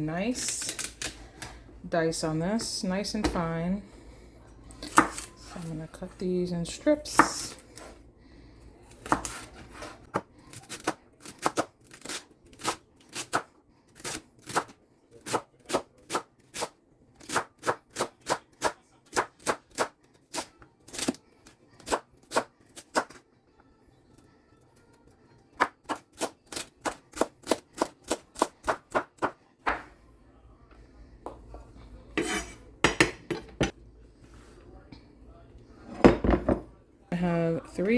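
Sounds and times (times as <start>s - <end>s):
knife chopping on cutting board: 4.9s - 5.3s, 32.2s - 33.7s.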